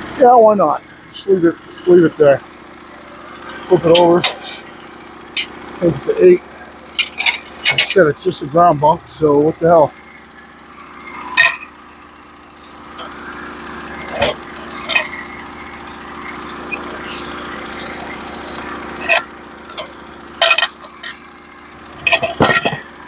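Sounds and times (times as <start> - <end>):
sawmill engine running: 0.0 - 23.0
sharp knocks and clanks: 3.5 - 4.7, 6.9 - 8.4, 19.0 - 21.2, 22.0 - 23.0.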